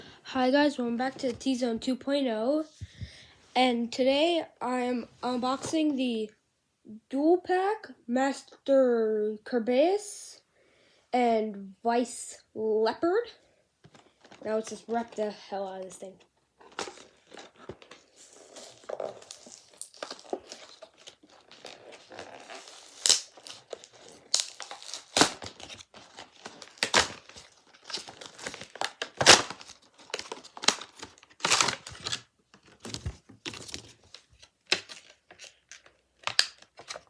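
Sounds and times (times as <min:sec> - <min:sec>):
packaging crinkling: 0:16.6 - 0:37.0
sharp paper rips: 0:18.2 - 0:32.2.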